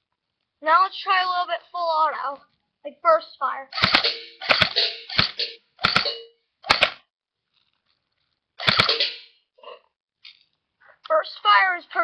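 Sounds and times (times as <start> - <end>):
airsoft gun bursts: 3.8 - 6.1.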